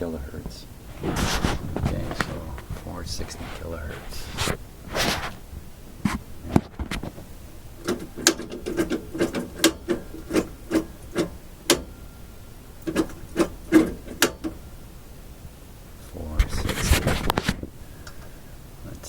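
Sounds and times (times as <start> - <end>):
sharp clicks of controls: 7.8 - 11.9.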